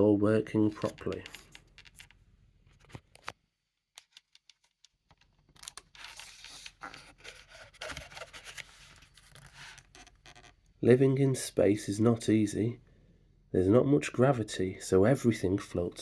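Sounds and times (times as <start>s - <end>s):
book pages rustling: 4.0s - 10.5s.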